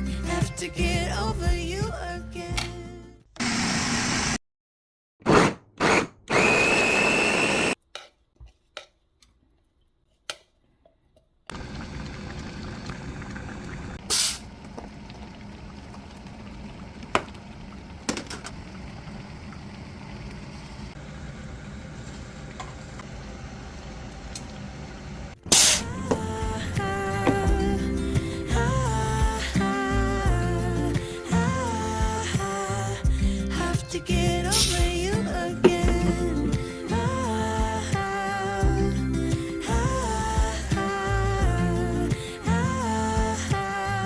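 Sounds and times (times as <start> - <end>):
short mechanical noises: 25.5 - 26.1.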